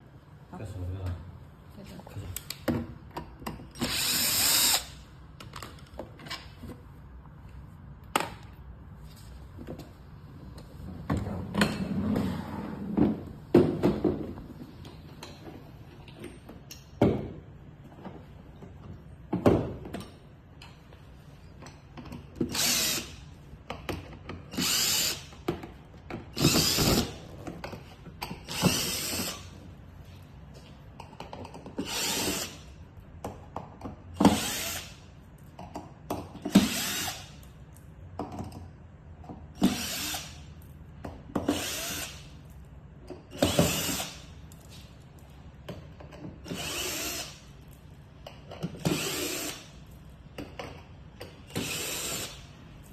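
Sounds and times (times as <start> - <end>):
power drill-driver bursts: 3.8 - 5.0, 22.5 - 23.2, 24.5 - 25.3, 26.4 - 27.1, 28.5 - 29.5, 31.8 - 32.6, 34.3 - 35.0, 36.6 - 37.4, 39.6 - 40.4, 41.5 - 42.2, 43.4 - 44.2, 46.4 - 47.4, 48.8 - 49.7, 51.5 - 52.4.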